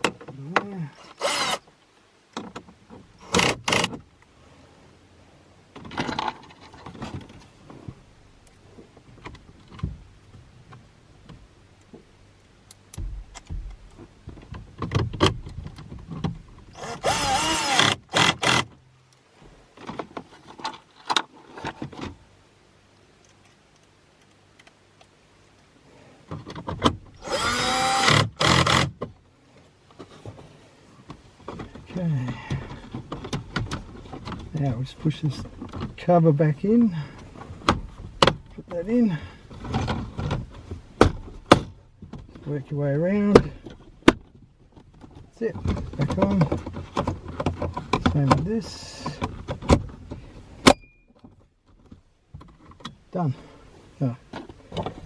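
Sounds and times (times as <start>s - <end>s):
power drill driving screws: 1.0s - 1.6s, 3.2s - 3.9s, 16.7s - 18.7s, 27.2s - 28.9s.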